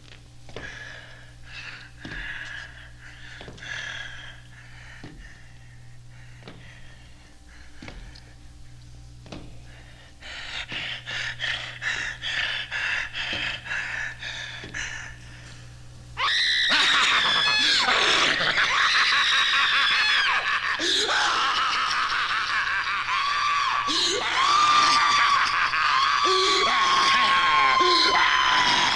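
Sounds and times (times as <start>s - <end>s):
woman screaming: 16.2s - 28.9s.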